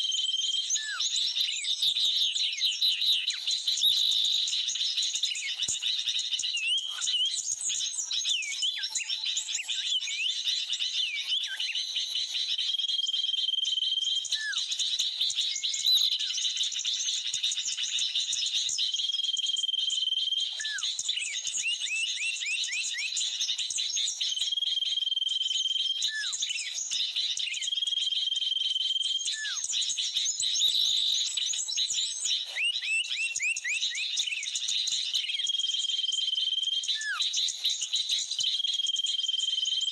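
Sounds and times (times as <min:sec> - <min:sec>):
bird whistle and falling call: 0:19.4 - 0:23.6, 0:24.2 - 0:31.8, 0:32.6 - 0:39.9.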